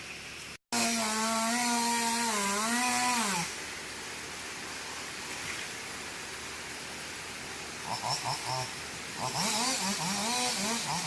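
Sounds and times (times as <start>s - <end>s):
chainsaw running: 0.7s - 3.6s, 7.8s - 11.0s
steady hiss: 2.1s - 11.0s.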